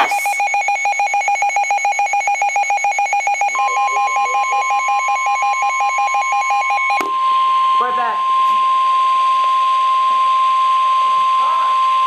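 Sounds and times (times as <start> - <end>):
steady high alert tone: 0.0 - 0.6, 3.3 - 8.6
rapid pulsing electronic beep: 0.0 - 8.4.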